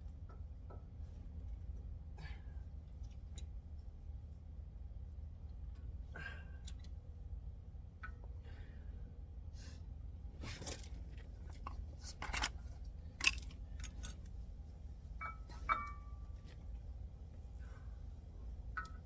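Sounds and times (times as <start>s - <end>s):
metal tools scraping and knocking: 15.2s - 16.2s
ringing metallic clinks: 15.2s - 16.4s.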